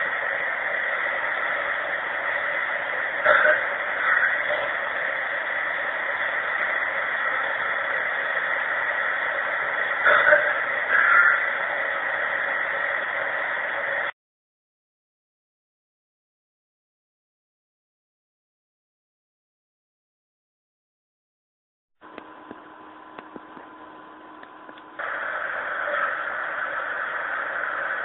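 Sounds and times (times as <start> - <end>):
recording hiss: 0.0 - 14.1, 22.0 - 28.0
person clearing throat: 3.2 - 3.7, 10.1 - 10.6.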